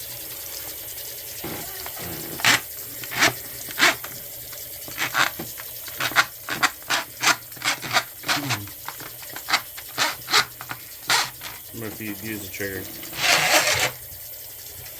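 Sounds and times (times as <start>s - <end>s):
rasping scrapes by hand: 1.4s - 4.1s, 4.9s - 8.8s, 9.4s - 11.6s, 13.0s - 14.0s.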